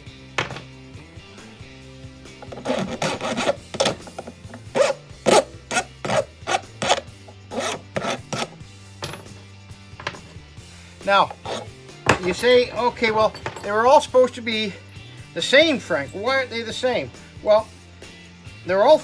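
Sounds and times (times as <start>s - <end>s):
hand file rasping on metal: 2.3s - 8.6s, 11.2s - 11.8s.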